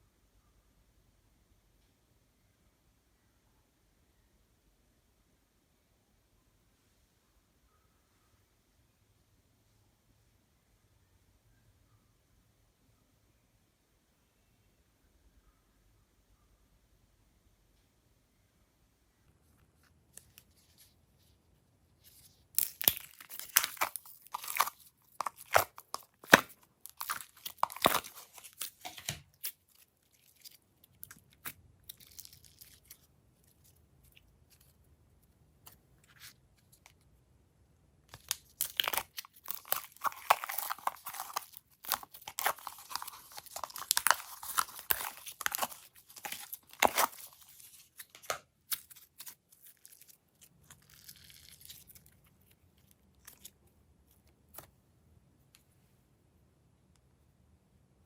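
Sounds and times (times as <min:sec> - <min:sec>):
hands working crackly slime: 0:19.6 - 0:37.2, 0:38.0 - 0:54.7.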